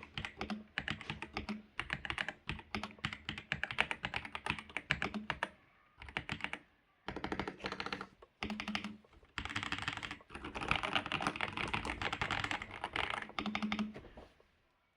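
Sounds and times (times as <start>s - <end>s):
mechanical keyboard typing: 0.0s - 14.0s.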